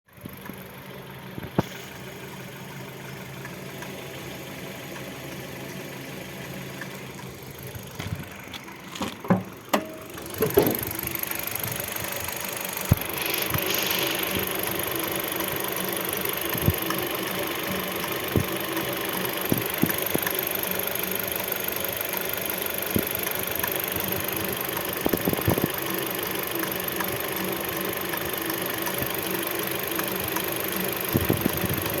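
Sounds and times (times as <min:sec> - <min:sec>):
car engine running: 0:00.1 - 0:32.0
sharp engine knocks: 0:09.0 - 0:11.1.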